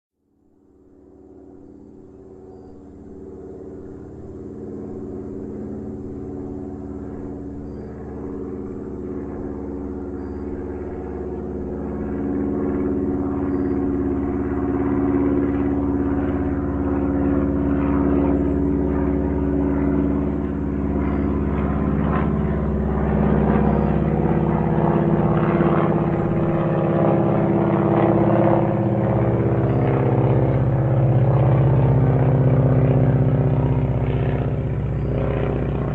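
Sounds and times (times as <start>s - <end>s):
propeller airplane engine droning: 0.2s - 35.9s.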